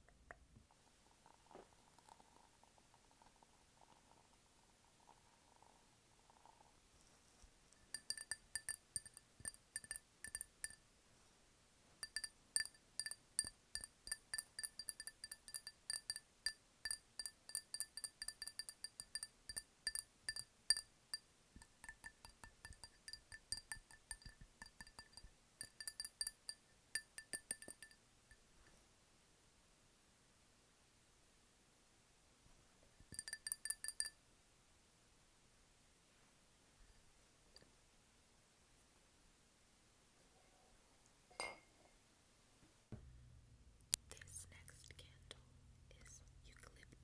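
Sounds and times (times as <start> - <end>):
tapping on glass jar: 7.8 - 10.8, 12.0 - 28.4, 33.0 - 34.2.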